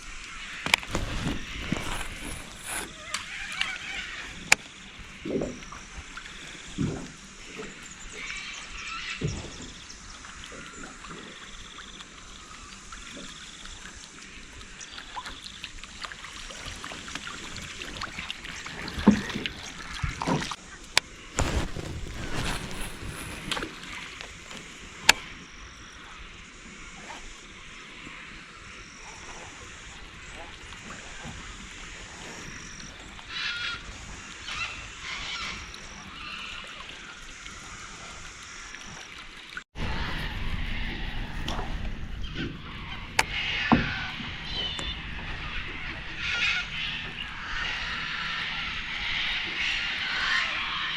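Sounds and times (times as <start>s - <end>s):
water lapping around a boat: 0.0s - 50.9s
bird calling: 0.3s - 6.6s, 40.8s - 50.9s.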